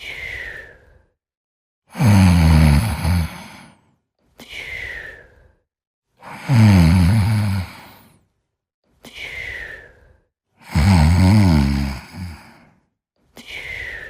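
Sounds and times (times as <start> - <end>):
whistling out-breath: 0.0 - 1.2, 4.6 - 5.6, 9.2 - 10.3, 13.4 - 14.0
loud snoring: 1.9 - 3.8, 6.2 - 8.2, 10.6 - 12.7.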